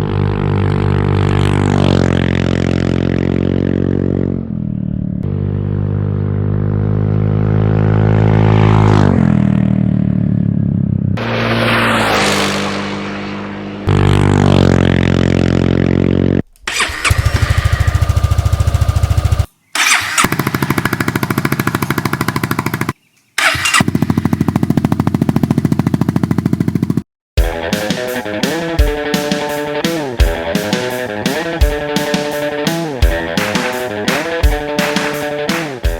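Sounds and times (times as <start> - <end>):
motorcycle engine revving: 0.0 - 27.0, 28.0 - 35.9
motorcycle engine idling: 16.7 - 27.0.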